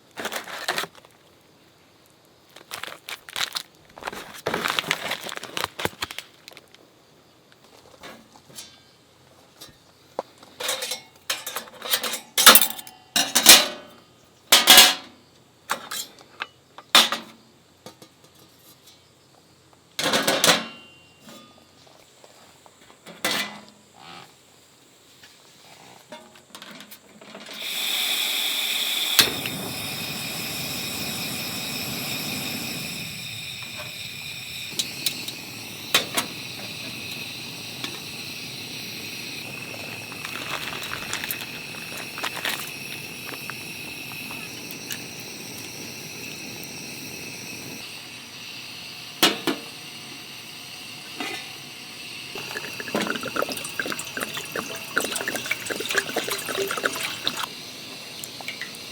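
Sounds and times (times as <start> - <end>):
gas stove burner hissing: 27.5 - 58.9.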